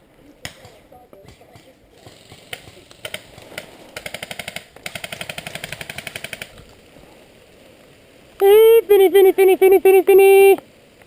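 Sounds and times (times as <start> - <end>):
airsoft gun firing: 2.3 - 6.7.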